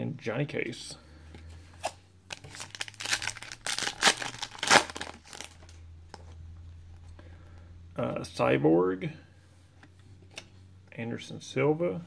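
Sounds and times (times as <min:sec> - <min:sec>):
low hum: 0:01.0 - 0:10.9
foil wrapper tearing and crinkling: 0:02.3 - 0:05.8.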